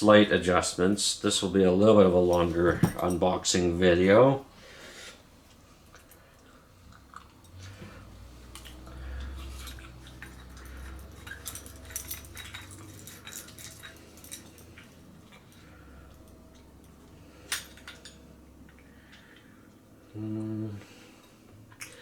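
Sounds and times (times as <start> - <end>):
small metal parts clicking: 8.5 - 19.8, 21.7 - 22.0.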